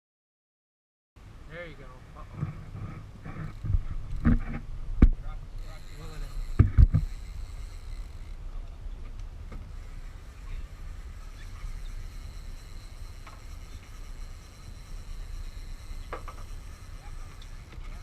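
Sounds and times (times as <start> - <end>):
boat motors droning: 1.5 - 18.0
faint ticks and knocks: 2.4 - 5.2, 6.3 - 8.0, 11.6 - 18.0.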